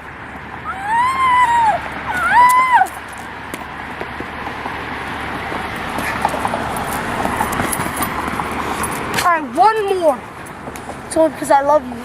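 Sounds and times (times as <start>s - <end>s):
car driving past: 0.0s - 9.4s.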